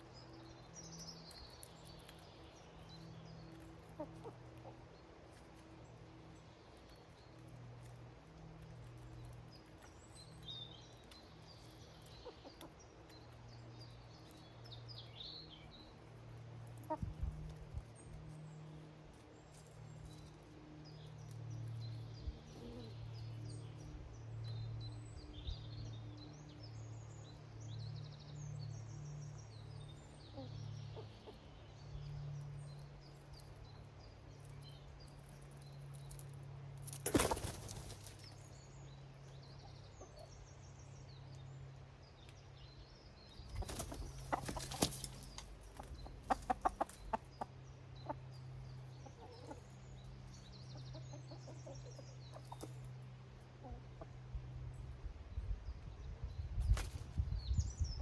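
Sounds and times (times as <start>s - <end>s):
small birds chirping: 0.0s - 58.0s
wings flapping: 36.8s - 38.3s, 43.6s - 45.5s
hens clucking: 43.5s - 49.7s.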